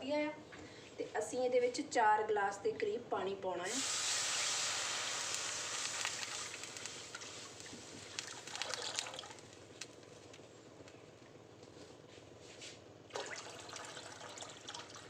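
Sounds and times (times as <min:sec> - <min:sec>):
steam hissing in a hot pan: 0:03.7 - 0:08.6
short clicks and splashes: 0:08.1 - 0:09.9.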